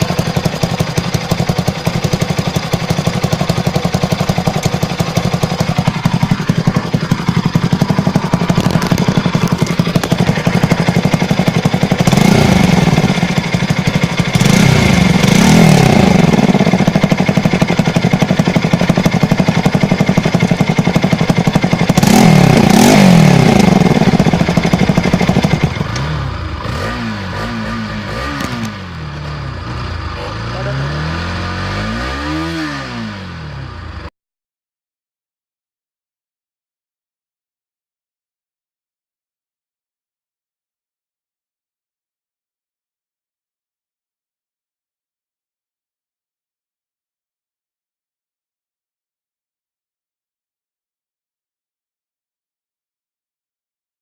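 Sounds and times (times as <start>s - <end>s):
motorcycle engine idling and revving: 0.0s - 34.1s.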